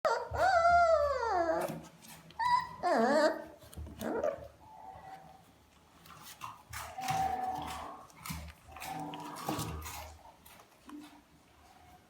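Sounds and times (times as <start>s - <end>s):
puppy whimpering and whining: 0.1s - 5.2s.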